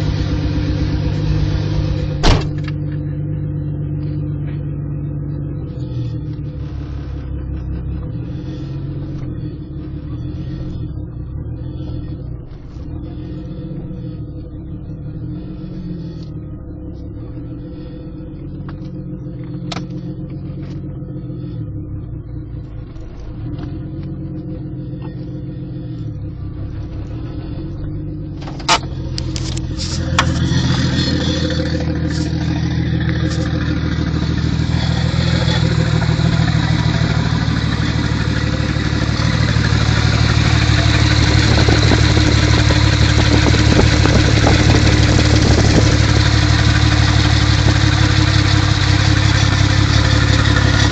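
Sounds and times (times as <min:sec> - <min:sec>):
car engine with rod knock: 0:00.0 - 0:03.0, 0:28.4 - 0:50.9.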